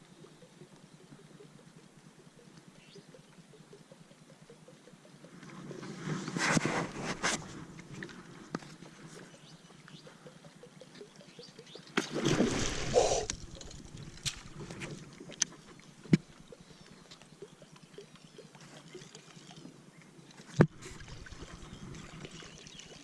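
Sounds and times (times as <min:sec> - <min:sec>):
small water sounds: 0:00.0 - 0:23.0
loud splash at water surface: 0:12.0 - 0:14.6.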